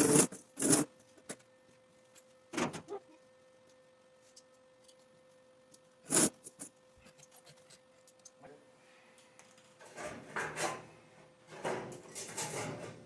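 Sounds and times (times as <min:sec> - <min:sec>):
scraping and rubbing: 0:06.1 - 0:06.7, 0:11.5 - 0:13.0.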